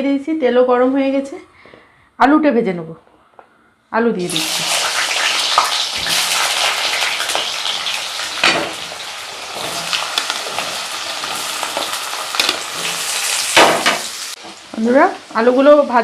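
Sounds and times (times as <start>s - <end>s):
potatoes sizzling in hot oil: 4.3s - 16.0s
stirring knocks: 8.2s - 14.8s.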